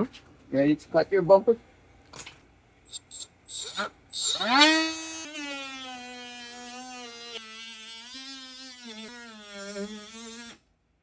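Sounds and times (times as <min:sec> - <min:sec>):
electric cutting tool buzzing: 0:03.0 - 0:10.6.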